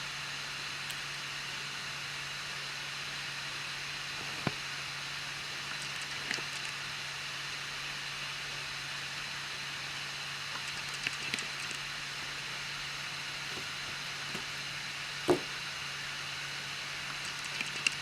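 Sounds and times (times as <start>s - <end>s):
printer fan hiss and hum: 0.0s - 18.0s.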